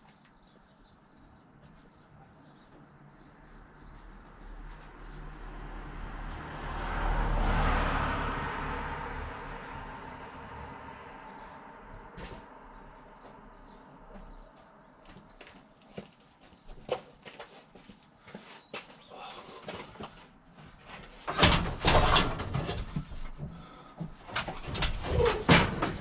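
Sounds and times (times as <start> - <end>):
small birds chirping: 0.0 - 5.6, 8.4 - 8.6, 9.5 - 20.4
vehicle passing by: 3.0 - 14.6.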